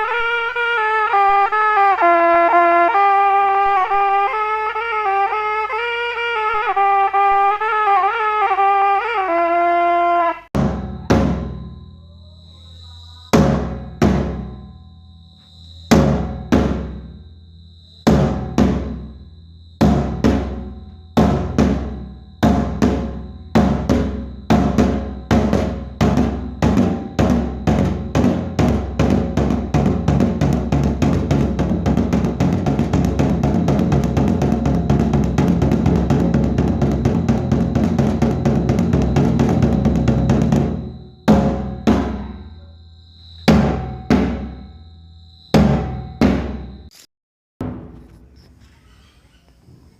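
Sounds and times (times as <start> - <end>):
wind instrument phrase: 0.0 - 10.5
thin high ringing tone: 10.6 - 16.4
drum strokes speeding into roll: 21.2 - 42.2.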